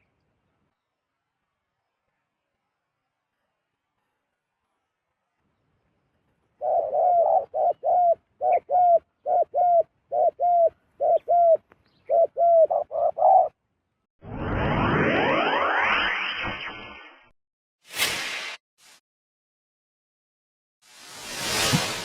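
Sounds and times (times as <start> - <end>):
dove cooing: 6.6 - 13.5.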